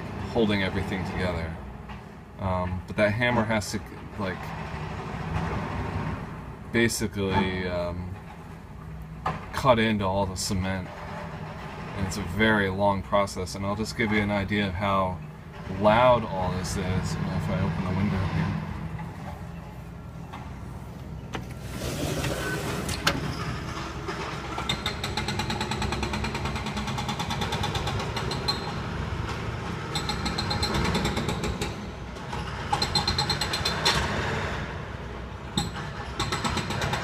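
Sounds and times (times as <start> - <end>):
diesel engines droning: 0.0 - 37.0
hydraulic hammers pounding concrete: 23.3 - 34.7, 35.5 - 37.0.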